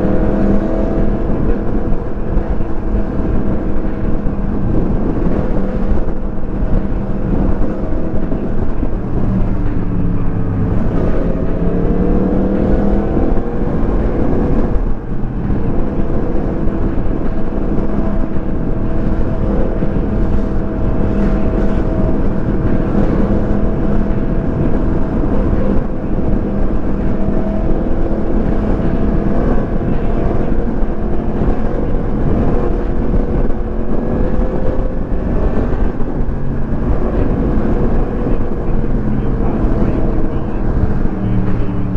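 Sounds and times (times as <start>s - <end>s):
wind noise on microphone: 0.0s - 41.9s.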